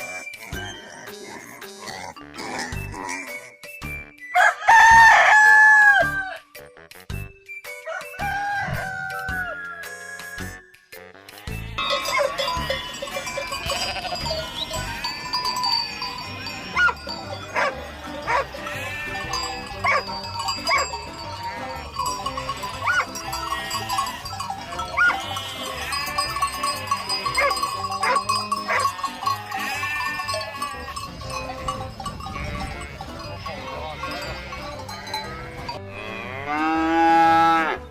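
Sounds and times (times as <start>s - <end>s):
livestock bleating: 11.3s - 37.9s
bells ringing: 11.7s - 36.0s.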